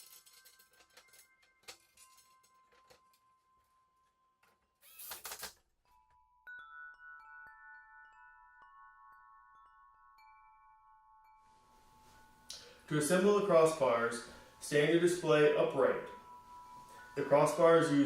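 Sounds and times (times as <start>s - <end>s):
wind chime tubes ringing: 5.9s - 18.0s.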